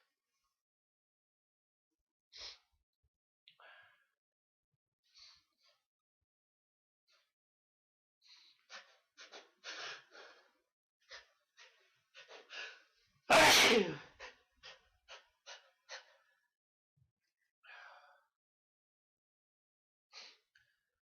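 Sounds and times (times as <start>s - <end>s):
short catching breaths: 8.3s - 13.0s
man sneezing: 13.3s - 14.1s.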